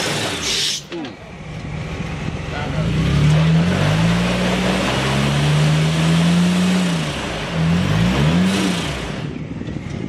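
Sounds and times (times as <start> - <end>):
engine revving under load: 0.0 - 9.4.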